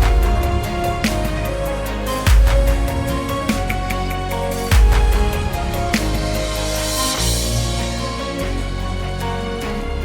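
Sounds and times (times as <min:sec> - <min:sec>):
background music with bass: 0:00.0 - 0:10.0
drum hit: 0:02.3 - 0:03.7, 0:04.7 - 0:05.4.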